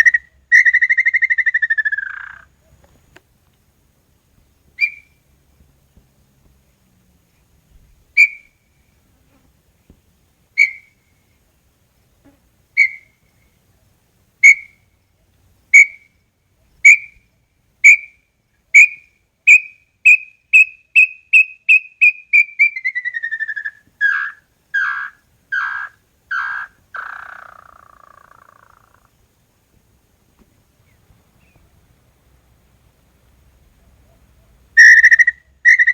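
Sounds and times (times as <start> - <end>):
bird whistling song: 0.0 - 2.8, 4.8 - 5.2, 8.2 - 8.6, 10.6 - 11.0, 12.8 - 13.2, 14.4 - 14.8, 15.8 - 16.1, 16.8 - 17.2, 17.8 - 18.2, 18.8 - 29.1, 34.8 - 35.9.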